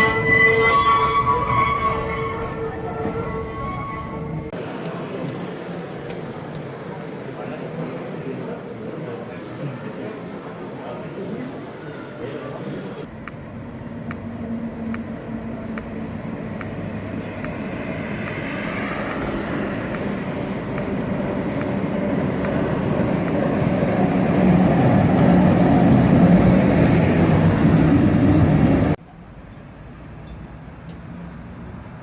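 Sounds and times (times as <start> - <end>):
faint high wheel squeal: 0.0 - 4.5
tram rumbling on track: 0.0 - 32.0.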